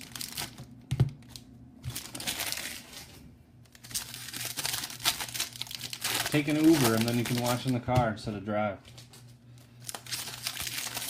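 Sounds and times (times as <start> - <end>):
foil wrappers crinkling: 0.0 - 8.0, 8.8 - 11.0.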